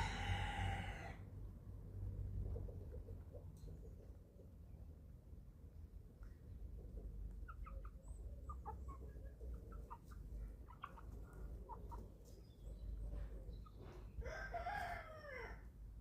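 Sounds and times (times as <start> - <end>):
low steady rumble: 0.0 - 16.0
chicks peeping and clucking: 6.6 - 15.0.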